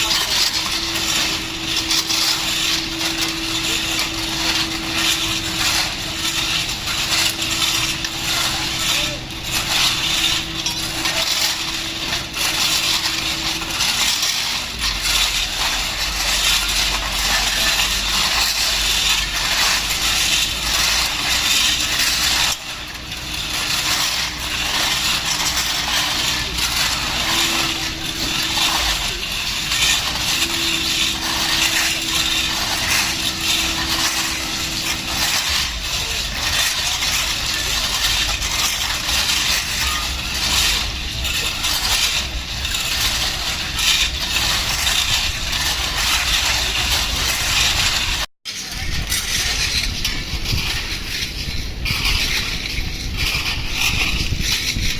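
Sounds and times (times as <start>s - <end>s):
ballast and metal scraping and clinking: 0.0s - 54.9s
machinery engines running: 0.0s - 54.9s.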